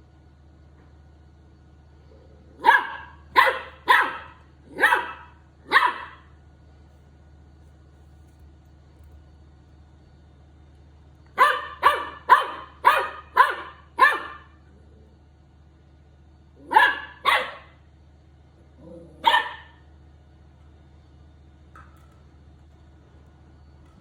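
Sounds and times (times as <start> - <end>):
puppy barking: 2.6 - 6.4, 11.4 - 14.6, 16.6 - 17.8, 18.8 - 19.8.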